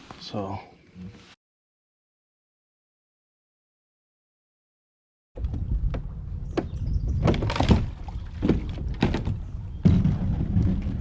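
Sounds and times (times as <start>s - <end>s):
sharp knocks and thumps: 5.4s - 11.0s.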